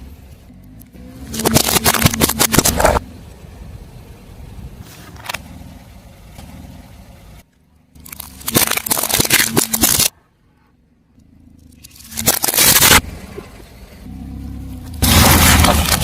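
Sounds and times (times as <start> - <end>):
car low rumble: 0.0 - 16.0
tyre crushing crunchy objects: 1.2 - 3.0, 8.0 - 10.1, 11.8 - 13.1, 14.8 - 16.0.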